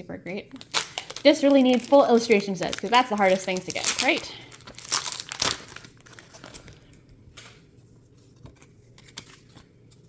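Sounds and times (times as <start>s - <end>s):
foil wrapper rustling: 0.5s - 7.0s
trading cards rustling and clicking: 0.6s - 10.0s.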